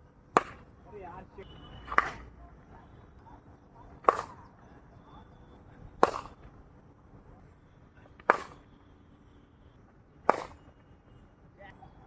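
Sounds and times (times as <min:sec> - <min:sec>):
cricket bat striking ball: 0:00.3 - 0:00.7, 0:01.8 - 0:02.3, 0:04.0 - 0:04.4, 0:05.9 - 0:06.5, 0:08.2 - 0:08.7, 0:10.2 - 0:10.7.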